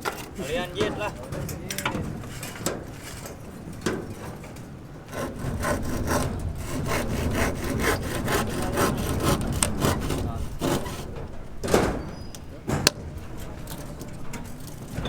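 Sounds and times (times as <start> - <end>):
hand saw cutting wood: 5.1 - 11.3.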